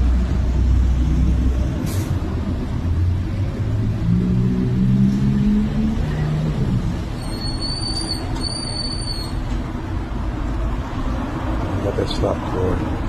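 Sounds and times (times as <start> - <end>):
short high-pitched squeals: 7.1 - 9.6.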